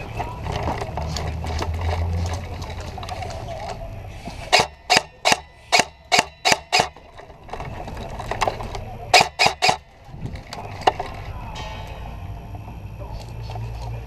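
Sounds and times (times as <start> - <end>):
airsoft gun shots: 4.5 - 7.0, 9.1 - 9.9.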